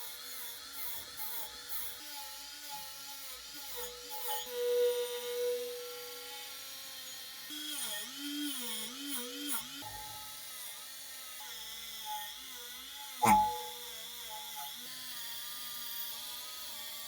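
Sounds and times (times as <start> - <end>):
electric rotary tool on metal: 0.0 - 17.0
sharp knock: 13.2 - 13.7.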